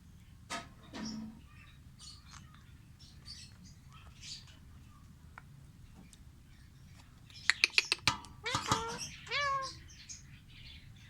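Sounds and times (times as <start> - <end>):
sharp clicks: 7.5 - 8.8
pet animal meowing: 8.4 - 9.9.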